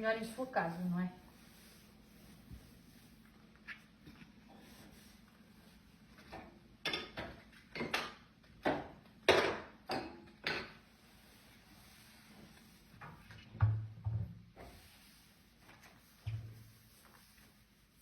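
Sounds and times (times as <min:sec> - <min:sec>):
damp cloth rubbing glass: 0:00.6 - 0:03.9.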